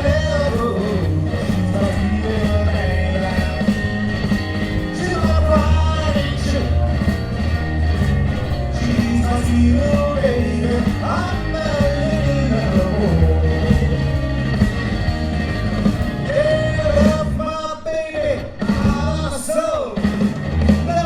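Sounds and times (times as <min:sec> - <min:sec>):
person singing: 0:00.0 - 0:04.3, 0:04.9 - 0:07.0, 0:08.6 - 0:14.5, 0:16.2 - 0:20.1
live band playing rock and roll: 0:00.0 - 0:21.0.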